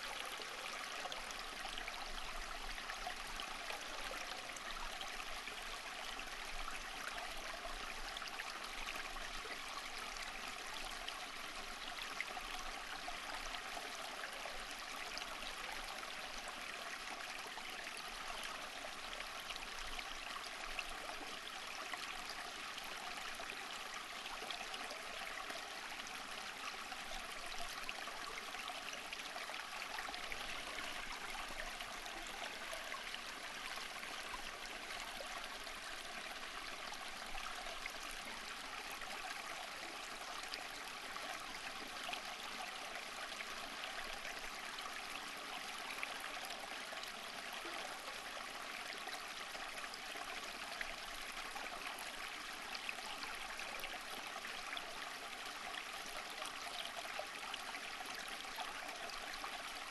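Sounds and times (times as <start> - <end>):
stream water babbling: 0.0 - 59.9.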